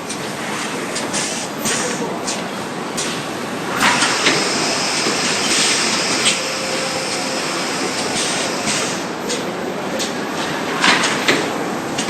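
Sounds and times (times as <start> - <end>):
heat-sealing machine hiss: 3.7 - 9.2.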